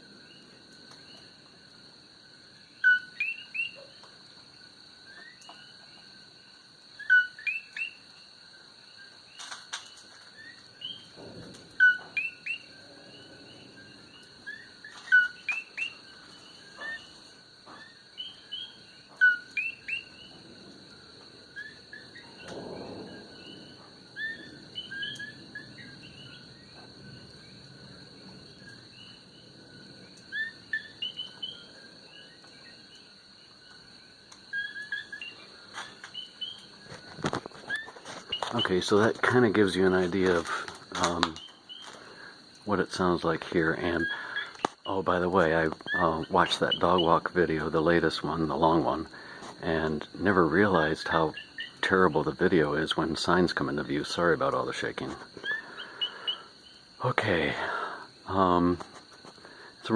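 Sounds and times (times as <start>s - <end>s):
frogs chirping: 0.0s - 59.9s
high insect hum: 0.0s - 59.9s
faint low rumble: 20.2s - 30.2s.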